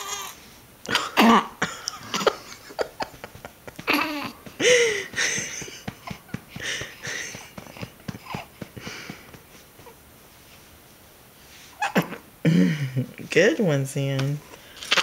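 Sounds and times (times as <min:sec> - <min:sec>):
baby grunting and crying: 0:00.0 - 0:02.4, 0:03.8 - 0:05.4, 0:06.9 - 0:08.6, 0:11.8 - 0:12.3
light taps on baby's back: 0:03.0 - 0:10.0.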